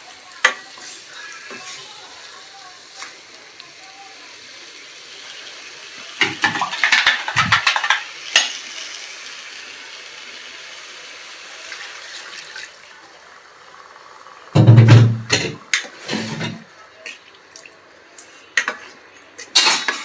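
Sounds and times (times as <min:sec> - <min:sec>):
pan hissing on stove: 0:00.0 - 0:17.0
spoon scraping in pan: 0:15.7 - 0:17.2.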